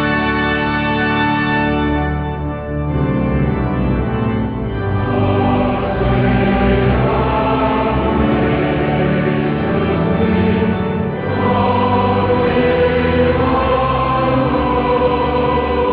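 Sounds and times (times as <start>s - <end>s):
organ music: 0.0s - 15.9s
choir singing: 4.8s - 15.9s.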